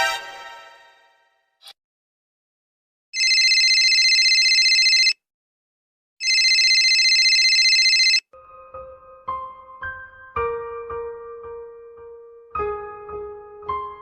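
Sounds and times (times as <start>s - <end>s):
telephone ringing: 3.2s - 5.2s, 6.2s - 8.2s.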